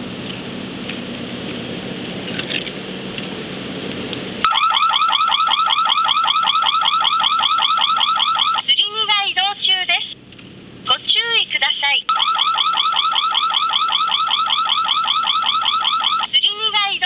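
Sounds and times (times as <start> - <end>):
crane warning alarm siren chirps: 4.4 - 8.8, 12.1 - 17.0.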